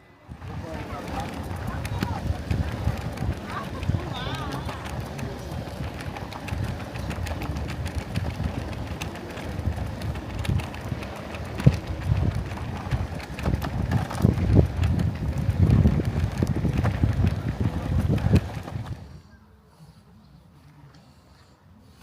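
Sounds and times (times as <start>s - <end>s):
wind buffeting microphone: 0.3s - 19.2s.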